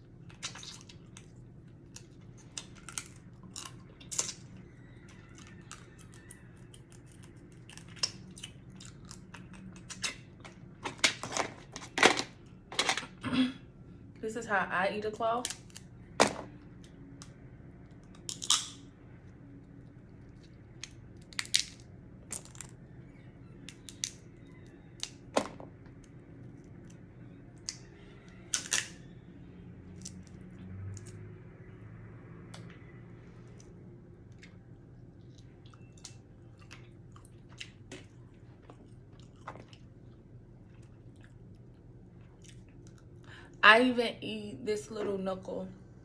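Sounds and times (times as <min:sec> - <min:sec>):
chewing: 0:00.2 - 0:10.7, 0:33.4 - 0:43.4
crab shell cracking: 0:00.4 - 0:10.3, 0:18.0 - 0:18.9, 0:20.7 - 0:25.4, 0:27.6 - 0:29.0.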